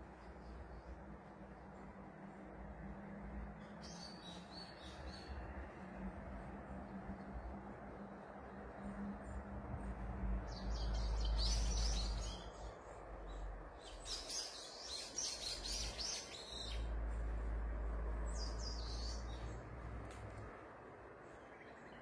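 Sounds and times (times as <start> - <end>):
birds chirping: 6.3 - 22.0.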